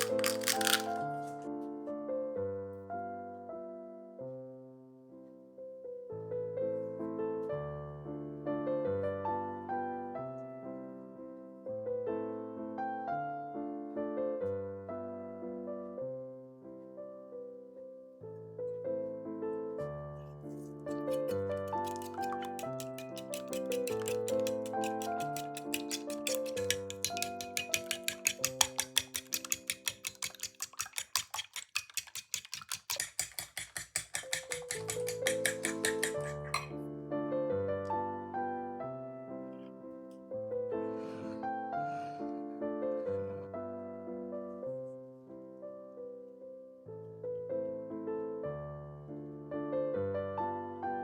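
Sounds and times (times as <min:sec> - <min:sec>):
gentle piano piece: 0:00.0 - 0:30.1, 0:35.0 - 0:51.0.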